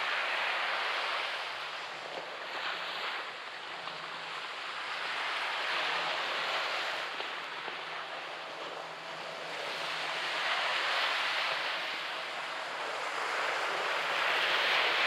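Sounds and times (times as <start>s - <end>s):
surf breaking on beach: 0.0s - 15.0s.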